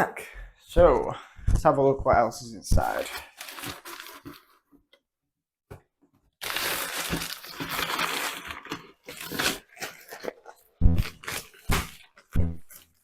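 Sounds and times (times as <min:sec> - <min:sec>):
cardboard and paper crackling: 0:02.8 - 0:04.7, 0:06.4 - 0:13.0.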